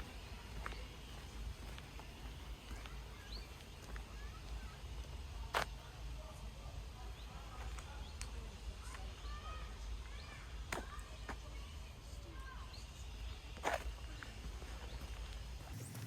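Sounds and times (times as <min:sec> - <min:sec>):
small birds chirping: 0:00.0 - 0:05.8, 0:07.0 - 0:16.0
steady low rumble: 0:15.6 - 0:16.0.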